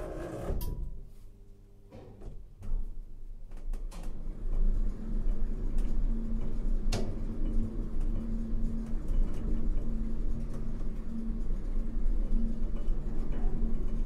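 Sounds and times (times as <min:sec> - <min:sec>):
elevator car rumbling: 0:04.1 - 0:14.0.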